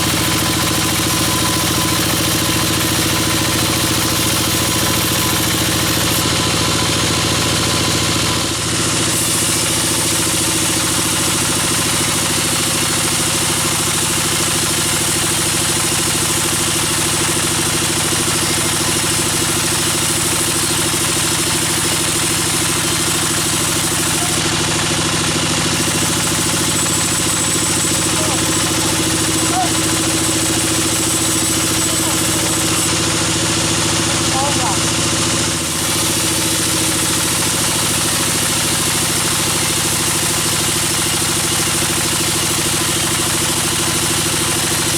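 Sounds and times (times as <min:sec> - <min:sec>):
sawmill machinery drone: 0:00.0 - 0:44.9.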